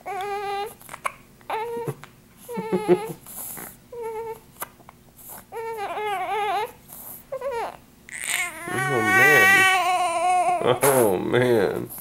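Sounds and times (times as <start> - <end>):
newborn baby crying: 0.0 - 3.2, 3.9 - 4.4, 5.5 - 11.2.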